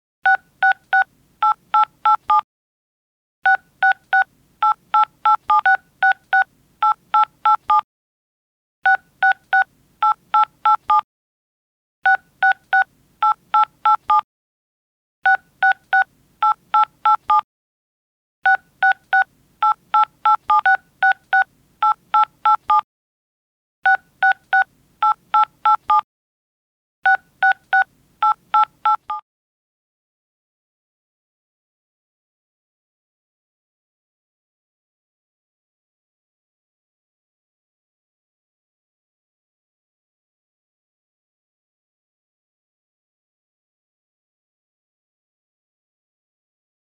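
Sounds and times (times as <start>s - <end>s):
telephone keypad dialing beeps: 0.3s - 2.4s, 3.5s - 7.8s, 8.9s - 11.0s, 12.1s - 14.2s, 15.3s - 17.4s, 18.5s - 22.8s, 23.9s - 26.0s, 27.1s - 29.2s.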